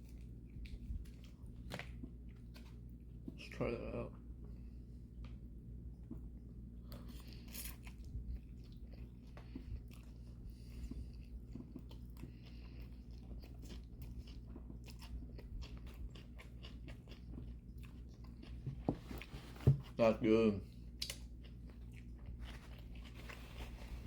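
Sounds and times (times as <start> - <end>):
person chewing noodles: 5.9 - 19.4, 20.6 - 24.0.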